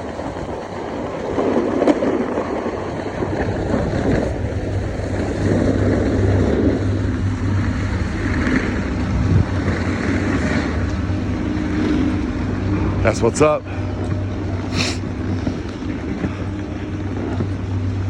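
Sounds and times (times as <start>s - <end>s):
steady low hum: 0.0s - 18.0s
wind on microphone: 0.0s - 18.0s
snowboard scraping across snow: 0.1s - 12.2s.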